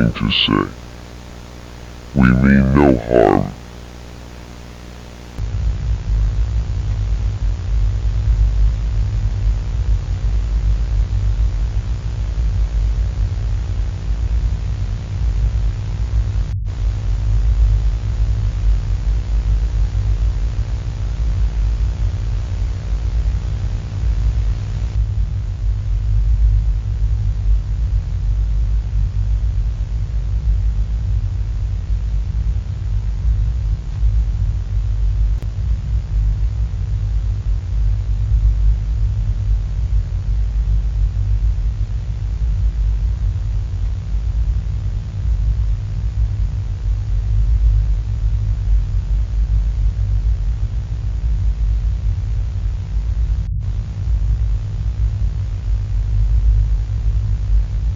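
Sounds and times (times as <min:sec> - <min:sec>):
faint hum tones: 0:00.0 - 0:05.4
static hiss: 0:00.0 - 0:05.4.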